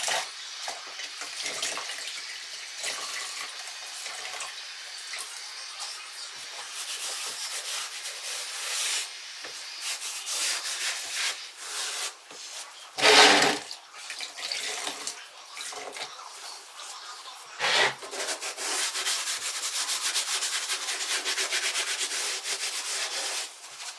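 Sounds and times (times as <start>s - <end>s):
damp rag wiping tiles: 6.4s - 13.6s, 16.3s - 23.9s.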